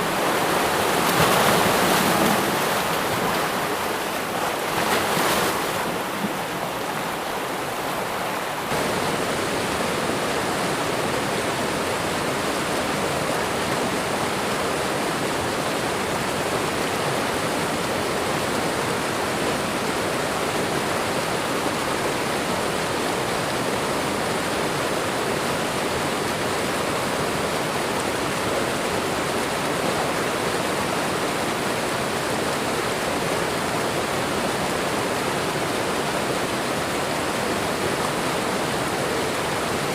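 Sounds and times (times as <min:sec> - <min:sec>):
waterfall rushing: 0:00.0 - 0:16.3.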